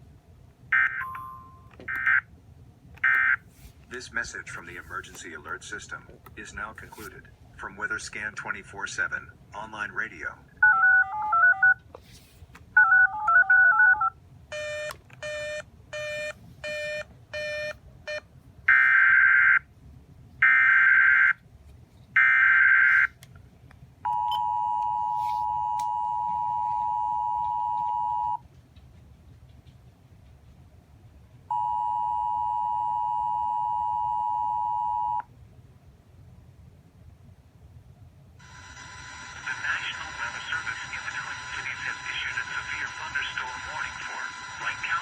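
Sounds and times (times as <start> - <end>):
data header bursts: 38.4 - 45.0.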